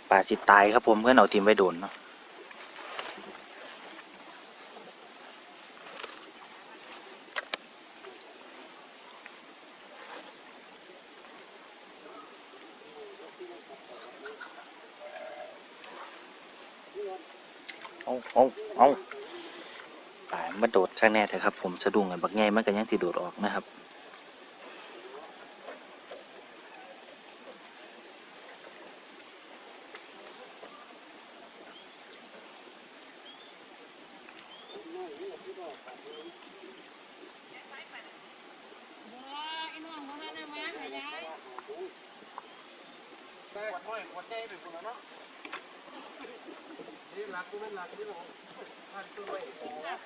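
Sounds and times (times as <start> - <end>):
insects droning: 0.0 - 50.0
faint clicks: 6.9 - 8.1.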